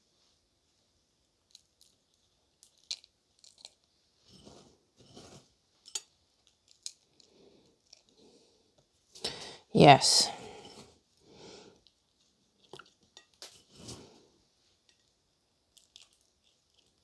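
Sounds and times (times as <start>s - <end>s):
biscuit crumbs crunching: 1.4s - 5.4s, 15.7s - 17.0s.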